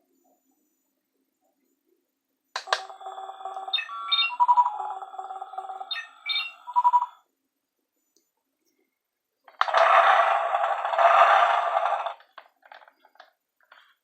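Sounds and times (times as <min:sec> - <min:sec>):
toy click: 0:02.6 - 0:03.0
electronic toy beeps and tones: 0:02.7 - 0:07.2.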